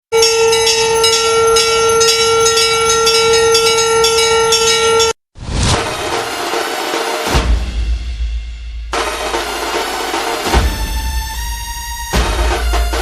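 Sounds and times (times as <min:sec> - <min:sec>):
bells ringing: 0:00.1 - 0:05.2
held tone: 0:00.1 - 0:05.2.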